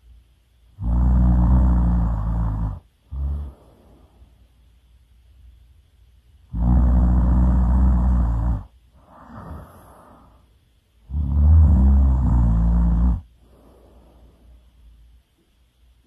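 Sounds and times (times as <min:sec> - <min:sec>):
person snoring loudly: 0:00.8 - 0:03.9, 0:06.5 - 0:10.3, 0:11.1 - 0:13.3.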